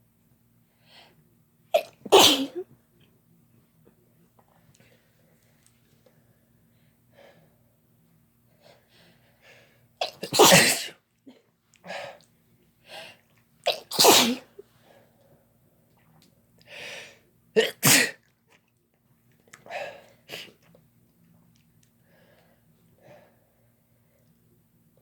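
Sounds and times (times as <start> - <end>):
person sneezing: 1.8 - 2.6, 10.0 - 11.0, 13.7 - 14.5, 17.6 - 18.2
soft breaths: 22.0 - 24.6.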